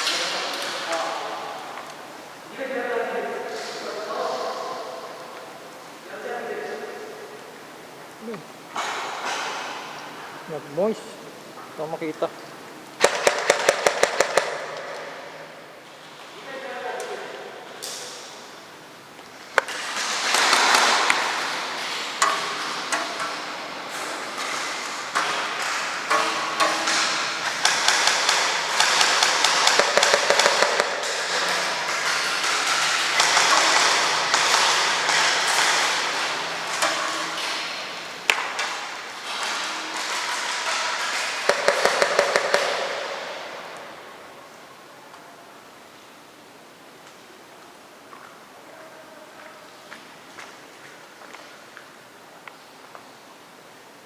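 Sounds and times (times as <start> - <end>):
steady rustling noise: 0.0 - 54.0
rifle firing rapid bursts: 13.0 - 14.8, 27.6 - 31.4.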